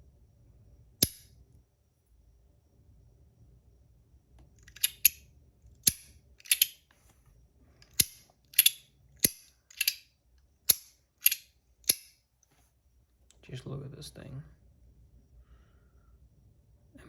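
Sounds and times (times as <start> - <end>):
fidget coin clicking: 4.6 - 6.9, 7.8 - 10.1, 10.7 - 12.1.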